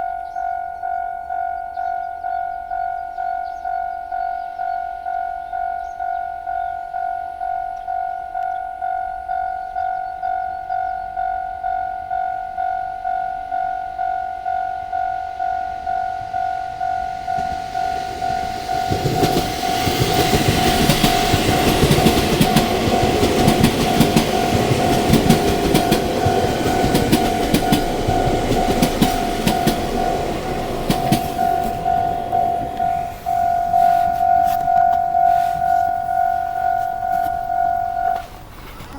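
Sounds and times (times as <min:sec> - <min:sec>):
level crossing warning bell: 0:00.0 - 0:38.9
train wheels clattering over rails: 0:16.1 - 0:38.9.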